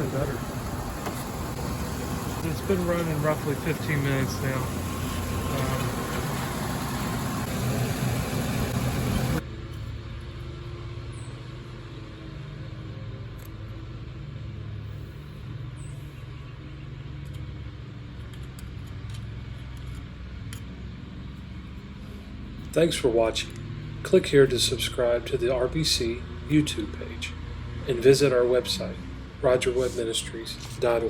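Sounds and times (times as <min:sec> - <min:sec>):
blower fan rushing air: 0:00.0 - 0:09.7
low engine hum: 0:00.0 - 0:31.0.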